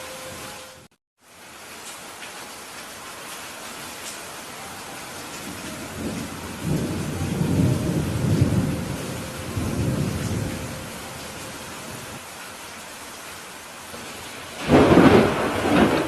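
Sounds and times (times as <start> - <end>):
steady rain: 0.0 - 16.0
thunder rumbling: 5.3 - 12.2, 14.0 - 16.0.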